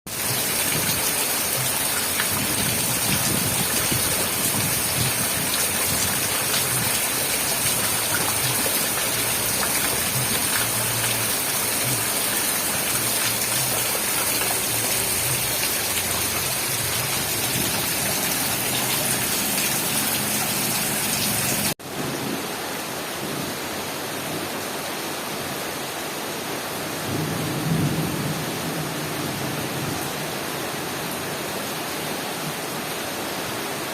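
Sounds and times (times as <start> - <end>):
heavy rain: 0.1 - 33.9.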